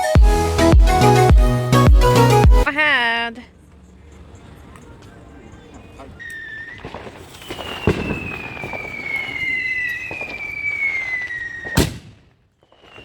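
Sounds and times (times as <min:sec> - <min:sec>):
firework whistles falling in pitch: 0:06.2 - 0:13.0
firework sharp bang: 0:06.6 - 0:13.0.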